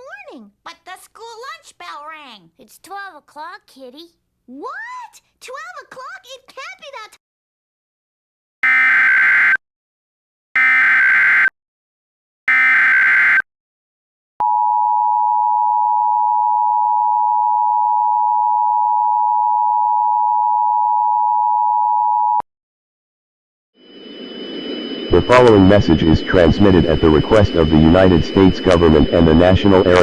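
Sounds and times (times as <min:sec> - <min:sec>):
two-tone alert signal: 0:23.8 - 0:30.0
digital data bursts: 0:24.0 - 0:30.0.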